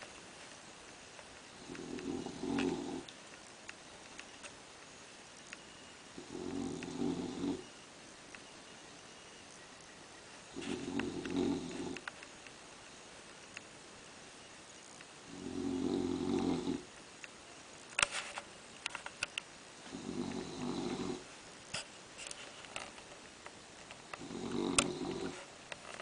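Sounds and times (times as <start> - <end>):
puppy snoring: 1.5 - 3.1, 6.1 - 7.8, 10.5 - 12.1, 15.2 - 16.9, 19.8 - 21.3, 24.0 - 25.5.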